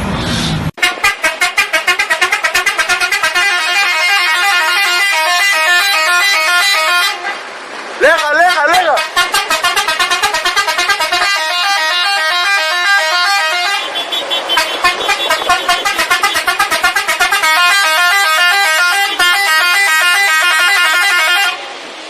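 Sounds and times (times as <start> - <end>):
musical vehicle horn tune: 0.8 - 7.5, 8.1 - 21.6.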